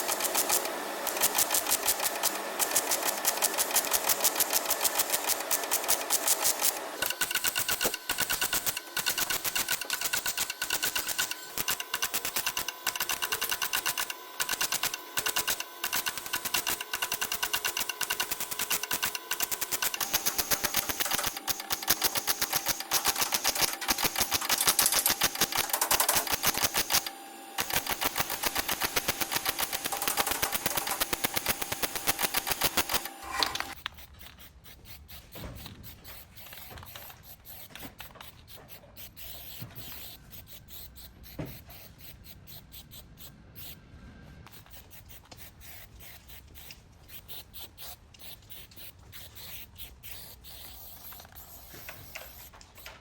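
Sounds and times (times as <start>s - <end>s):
power tool rattling: 0.0s - 40.3s.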